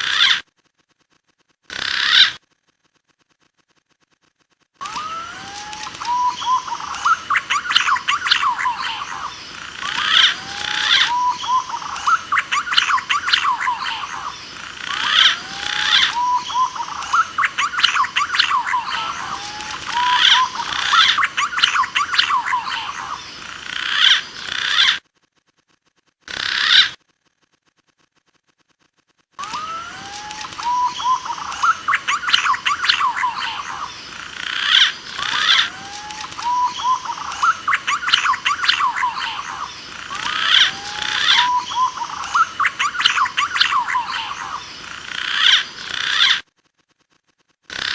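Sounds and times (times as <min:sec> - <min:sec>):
rising whistled bird calls: 0:04.8 - 0:23.2, 0:29.4 - 0:44.7.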